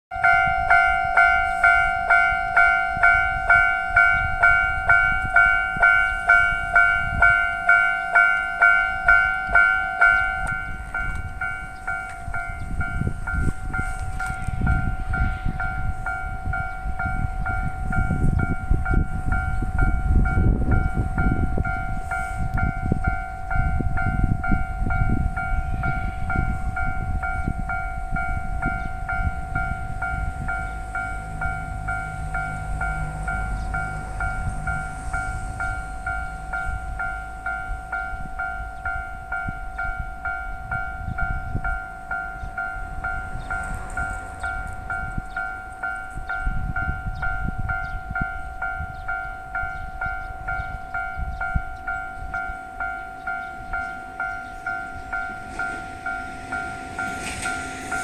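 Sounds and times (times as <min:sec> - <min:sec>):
level crossing warning bell: 0:00.1 - 0:58.0
train rumbling: 0:00.1 - 0:58.0
train wheel clacks: 0:40.4 - 0:58.0.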